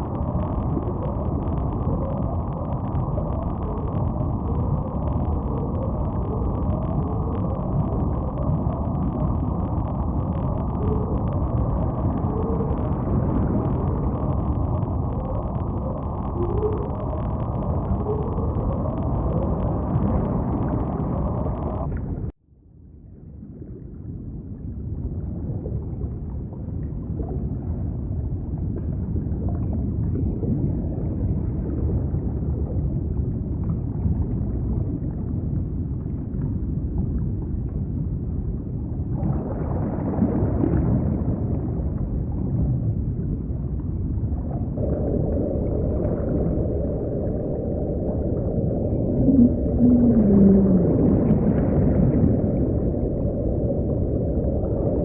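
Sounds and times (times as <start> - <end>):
deep underwater rumble: 0.0 - 55.0
short low falling tone: 44.7 - 55.0
higher tonal layers: 48.0 - 52.2.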